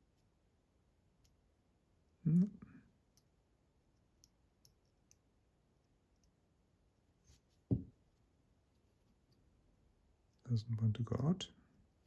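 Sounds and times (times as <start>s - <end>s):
dull knock: 7.7s - 7.9s.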